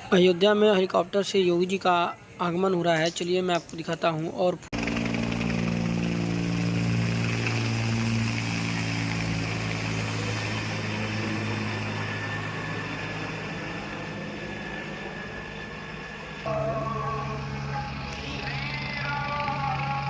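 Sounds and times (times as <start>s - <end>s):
helicopter drone: 4.7s - 20.0s
music: 16.5s - 20.0s.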